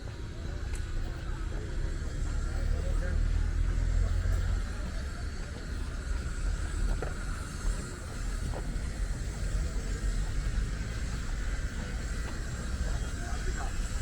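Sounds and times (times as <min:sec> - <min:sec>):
passing traffic rumble: 0:00.0 - 0:14.0.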